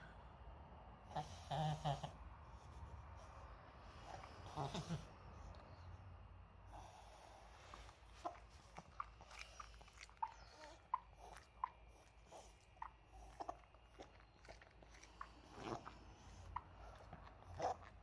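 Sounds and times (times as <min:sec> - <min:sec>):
dog snorting: 0:01.1 - 0:02.2, 0:04.0 - 0:05.2, 0:06.7 - 0:18.0.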